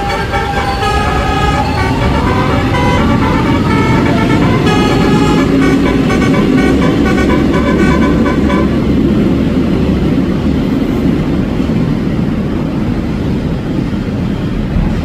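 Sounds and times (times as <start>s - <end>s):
musical vehicle horn: 0.0s - 9.3s
low rumble of traffic: 0.0s - 15.0s.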